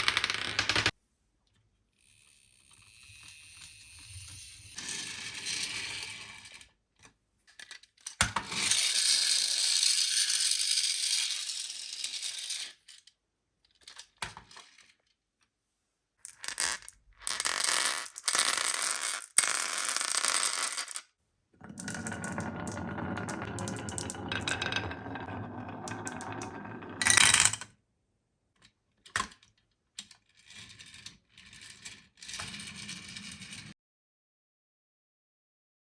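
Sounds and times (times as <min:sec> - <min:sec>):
marbles rolling and clattering: 0:00.0 - 0:00.9, 0:16.2 - 0:21.0, 0:21.6 - 0:27.7.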